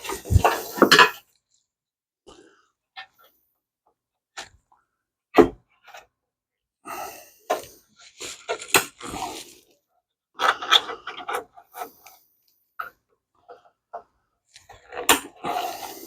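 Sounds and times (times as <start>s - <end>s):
dashboard parts scraping and clattering: 0.0s - 1.2s.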